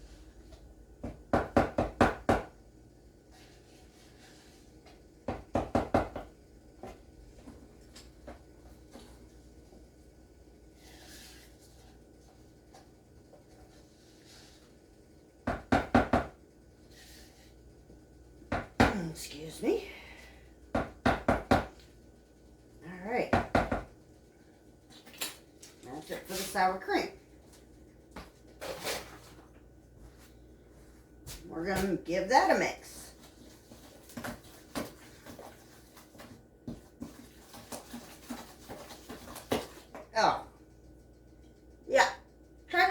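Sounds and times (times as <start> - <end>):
utensil knocking on mixing bowl: 1.0 - 2.6, 5.2 - 6.3, 15.4 - 16.4, 20.7 - 21.8, 23.3 - 23.9
utensil stirring batter in bowl: 3.2 - 9.8, 31.6 - 41.4.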